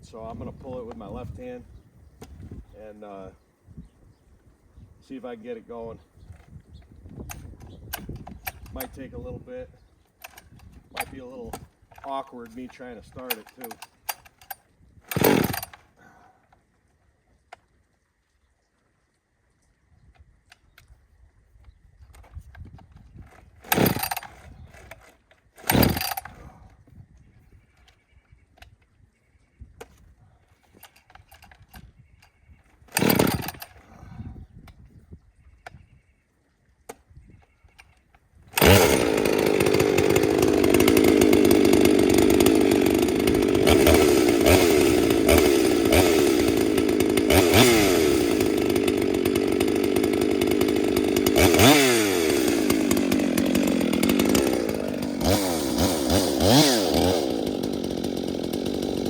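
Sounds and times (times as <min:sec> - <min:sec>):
chainsaw pull-start: 0:05.0 - 0:16.7, 0:22.0 - 0:26.8, 0:29.8 - 0:34.8, 0:37.7 - 0:59.0
chainsaw running at high revs: 0:10.3 - 0:11.6, 0:12.5 - 0:14.4, 0:15.1 - 0:16.0, 0:23.3 - 0:26.6, 0:32.9 - 0:34.2, 0:38.5 - 0:59.0.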